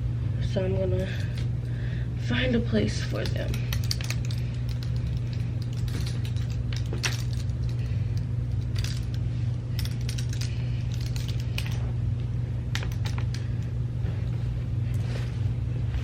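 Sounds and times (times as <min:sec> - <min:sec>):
steady low hum: 0:00.0 - 0:16.0
clothes hangers clicking and rattling: 0:02.9 - 0:11.9, 0:12.7 - 0:13.6.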